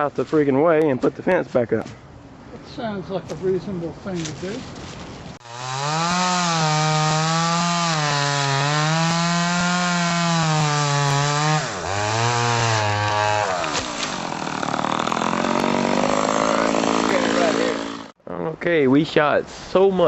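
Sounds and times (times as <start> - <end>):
chainsaw cutting wood: 5.4 - 18.2.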